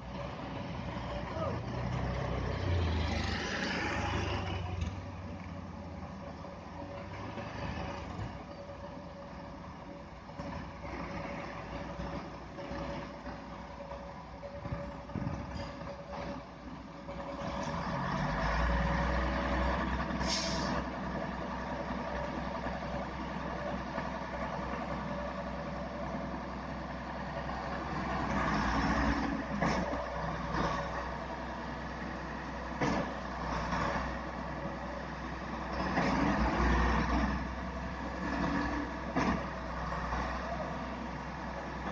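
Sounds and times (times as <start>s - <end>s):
air hiss: 20.2s - 20.8s.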